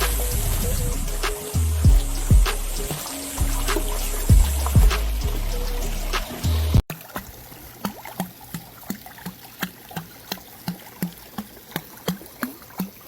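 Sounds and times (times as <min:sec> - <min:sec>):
music: 0:00.0 - 0:06.8.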